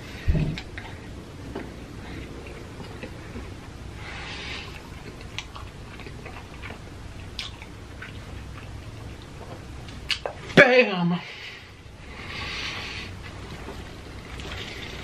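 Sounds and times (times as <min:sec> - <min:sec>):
person chewing food: 0:00.6 - 0:10.5.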